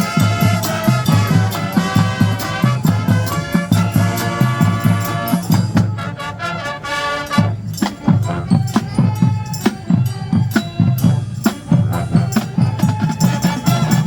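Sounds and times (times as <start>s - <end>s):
marching band wind chords: 0.0s - 14.0s
steady drum beat: 0.0s - 14.0s.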